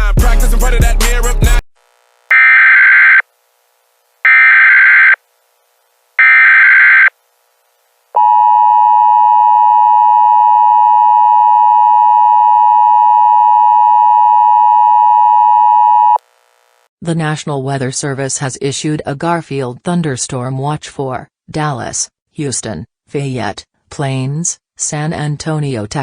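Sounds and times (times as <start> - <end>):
data bursts: 2.3 - 3.2, 4.2 - 5.2, 6.2 - 7.1
steady two-tone alert signal: 2.3 - 3.2, 4.3 - 5.2, 6.2 - 7.1.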